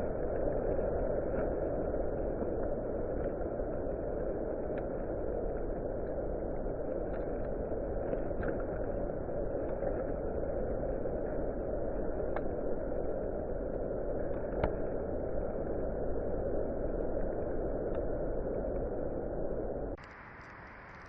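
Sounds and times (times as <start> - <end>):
strong wind on microphone: 0.0 - 21.0.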